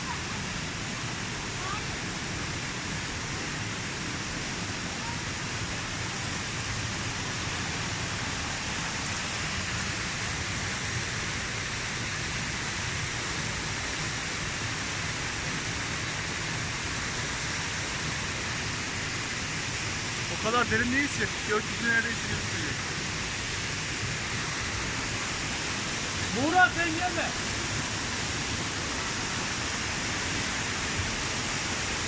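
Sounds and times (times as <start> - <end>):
waterfall rushing: 0.0 - 32.0.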